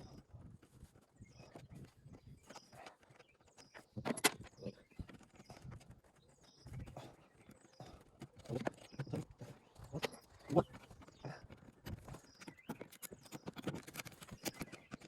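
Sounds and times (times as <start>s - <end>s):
hand tools clicking on metal: 12.4s - 15.0s.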